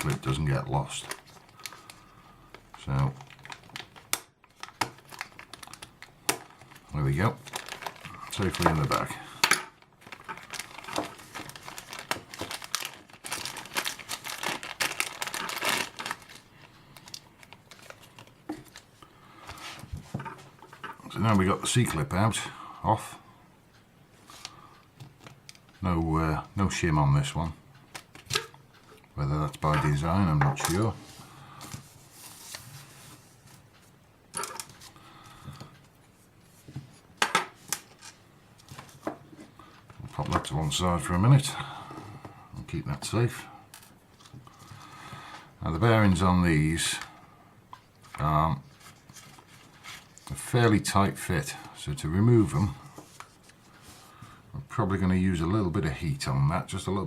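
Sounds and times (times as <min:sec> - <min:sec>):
plastic bag crinkling: 0:00.0 - 0:18.9.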